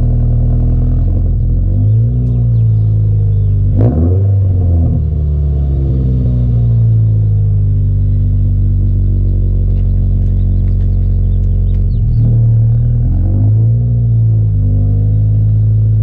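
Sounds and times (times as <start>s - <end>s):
car engine idling: 0.0s - 16.0s
engine rev blip: 1.8s - 7.2s.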